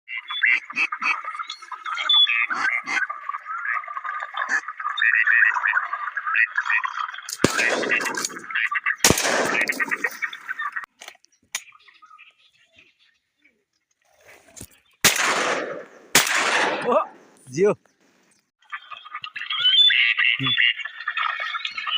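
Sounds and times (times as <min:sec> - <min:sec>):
shotgun shots: 0:07.4 - 0:10.1, 0:15.0 - 0:17.2
high-pitched chattering calls: 0:18.6 - 0:21.9.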